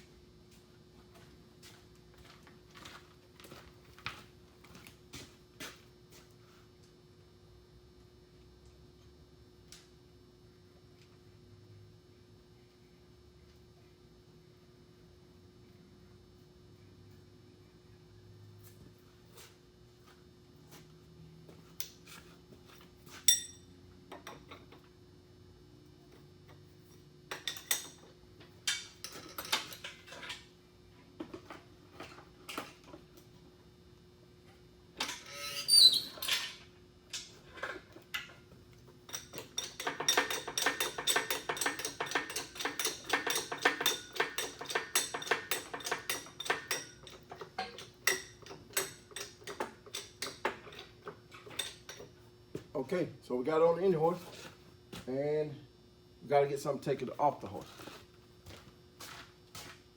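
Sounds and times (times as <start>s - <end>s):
metal clanks from tools: 35.0s - 38.4s, 39.1s - 52.1s.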